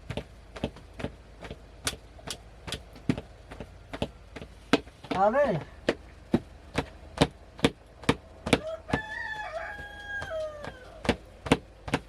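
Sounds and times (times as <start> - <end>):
steady chopping: 0.0 - 12.0
rooster crowing: 8.4 - 11.2.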